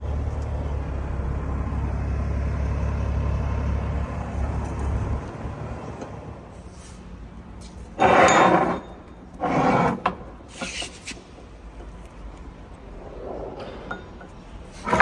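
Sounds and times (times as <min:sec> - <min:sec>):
heavy truck engine running: 0:00.0 - 0:08.0.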